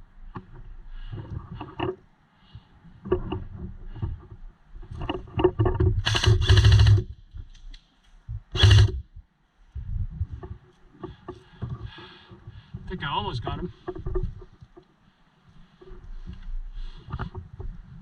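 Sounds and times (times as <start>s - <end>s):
airsoft gun bursts: 6.0s - 7.0s, 8.5s - 9.0s.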